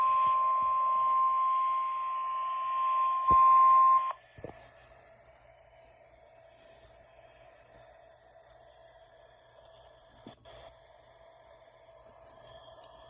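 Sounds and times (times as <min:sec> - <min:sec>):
radio alert tone: 0:00.0 - 0:04.1.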